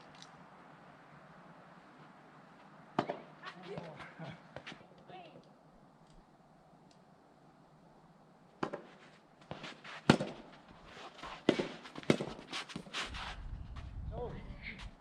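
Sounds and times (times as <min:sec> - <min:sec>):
rackets striking ball: 0:02.9 - 0:04.8, 0:08.6 - 0:12.9
wind buffeting microphone: 0:13.0 - 0:15.0.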